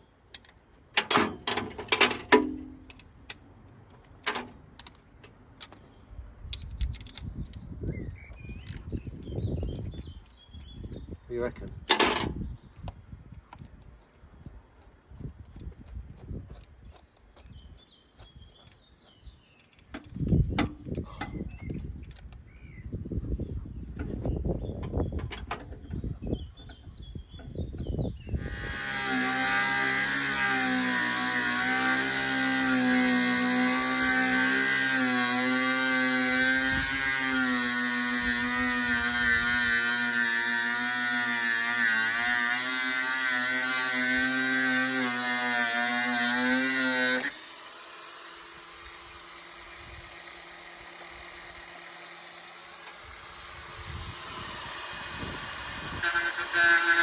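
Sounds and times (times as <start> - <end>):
angle grinder whining: 28.4 - 57.0.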